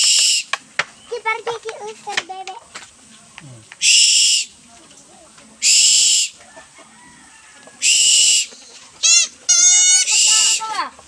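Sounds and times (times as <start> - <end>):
owl screeching: 0.0 - 0.5, 3.8 - 4.5, 5.6 - 6.4, 7.8 - 10.8.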